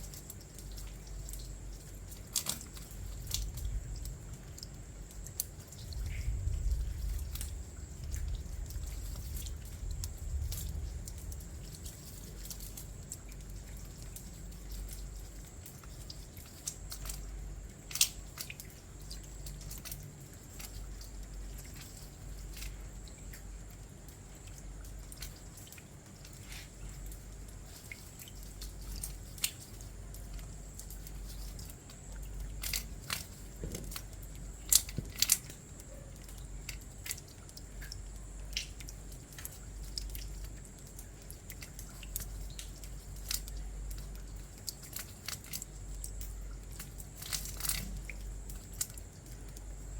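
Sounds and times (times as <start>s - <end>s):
raindrops dripping and splatting: 0.0s - 49.9s.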